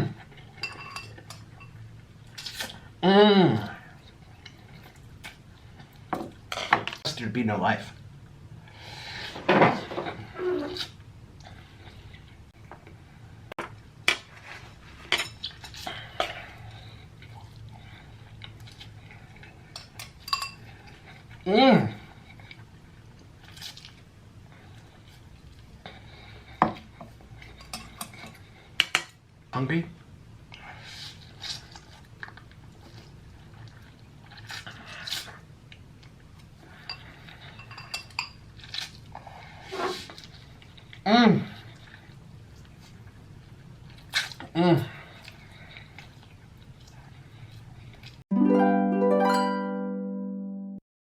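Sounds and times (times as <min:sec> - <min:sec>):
utensils clinking against a dish: 0:00.6 - 0:01.8, 0:15.0 - 0:15.6, 0:19.8 - 0:20.7, 0:27.6 - 0:29.1, 0:36.8 - 0:38.4
slurping and chewing noodles: 0:30.6 - 0:37.6, 0:38.6 - 0:48.2.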